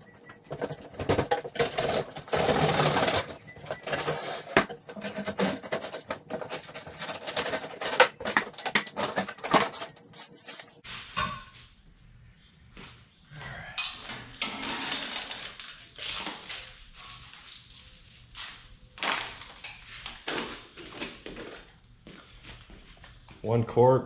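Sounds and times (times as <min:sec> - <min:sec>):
cardboard packaging rustling: 0:00.0 - 0:10.8
cardboard scraping: 0:00.4 - 0:10.8.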